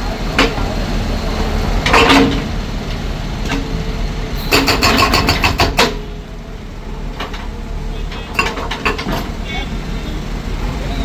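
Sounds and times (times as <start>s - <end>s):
heavy machine engine running: 0.0s - 11.0s
sharp knocks: 4.4s - 6.1s.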